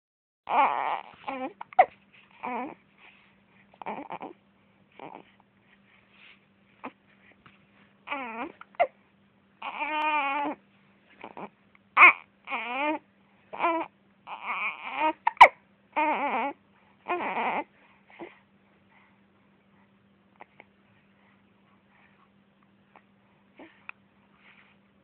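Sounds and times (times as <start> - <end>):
baby crying: 0.5 - 2.8, 8.1 - 8.9, 9.6 - 10.6, 11.2 - 13.0, 13.6 - 17.7
baby hiccups: 15.2 - 15.6.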